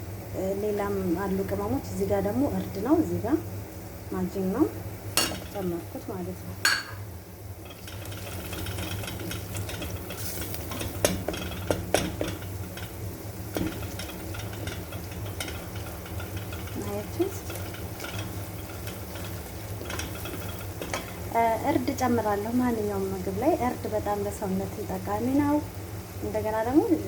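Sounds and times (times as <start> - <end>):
onions sizzling in oil: 0.0 - 27.0
steady low hum: 0.0 - 27.0
spoon clinking against pot: 6.6 - 7.0.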